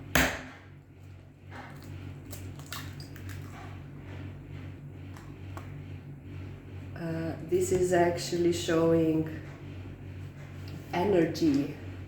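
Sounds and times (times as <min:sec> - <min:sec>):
egg squishing: 0:01.7 - 0:03.8.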